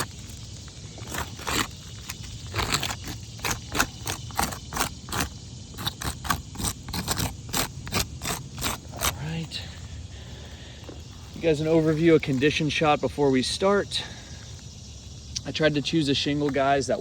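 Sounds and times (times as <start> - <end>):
marker scraping on shingle: 0.0 - 12.8.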